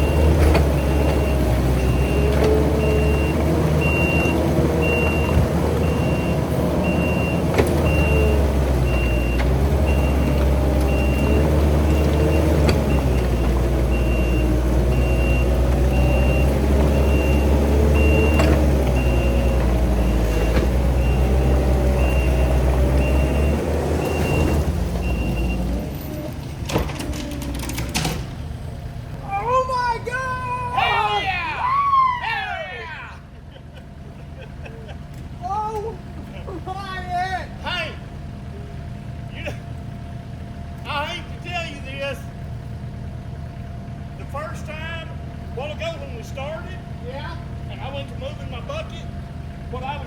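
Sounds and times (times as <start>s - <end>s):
backup alarm beeping: 0.0s - 26.1s
diesel engine straining: 0.0s - 50.0s.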